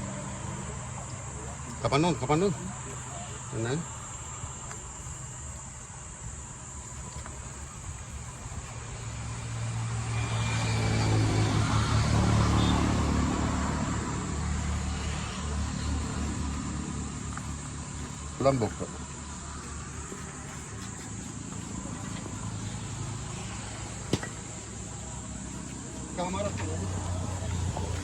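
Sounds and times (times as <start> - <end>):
vehicle engine passing by: 7.7 - 28.0.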